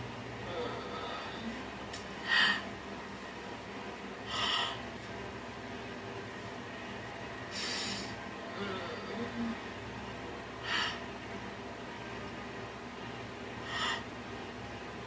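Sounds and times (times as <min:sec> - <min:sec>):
steady background hum: 0:00.0 - 0:15.0
person breathing puffs: 0:04.3 - 0:04.8, 0:07.5 - 0:08.2, 0:10.6 - 0:11.0, 0:13.6 - 0:14.1.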